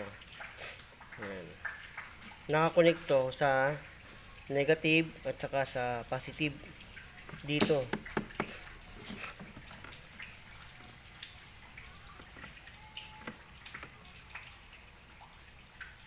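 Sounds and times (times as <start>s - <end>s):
faint clicks and taps of handling: 6.7s - 10.3s.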